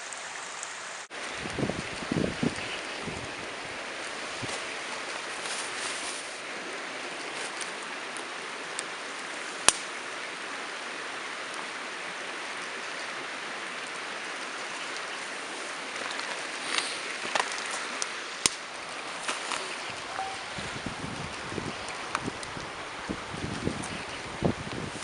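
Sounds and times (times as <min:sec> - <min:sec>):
steady rushing hiss: 0:00.0 - 0:25.0
wood fire crackling: 0:00.0 - 0:25.0
sharp pops from fire: 0:09.6 - 0:10.0, 0:16.7 - 0:19.7.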